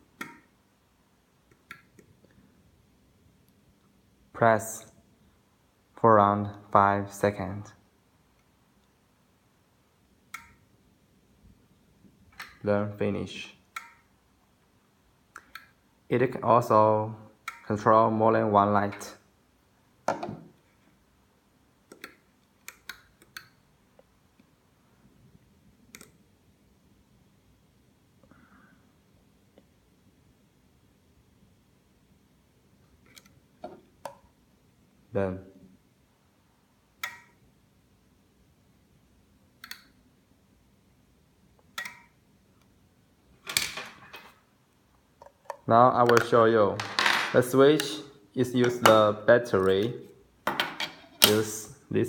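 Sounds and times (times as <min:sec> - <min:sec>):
switch buttons clicking: 0:10.3 - 0:10.6, 0:13.7 - 0:14.1, 0:17.4 - 0:17.7, 0:37.0 - 0:37.4, 0:41.8 - 0:42.1.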